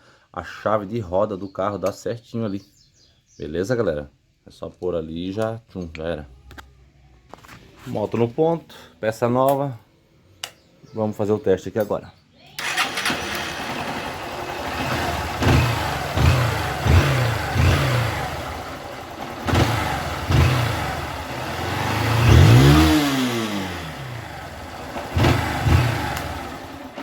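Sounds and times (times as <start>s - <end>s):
motorcycle engine idling and revving: 12.6s - 27.0s.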